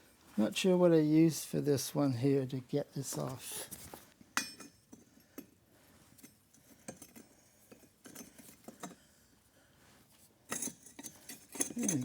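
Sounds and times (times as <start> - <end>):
small metal tools clinking: 10.5 - 12.0.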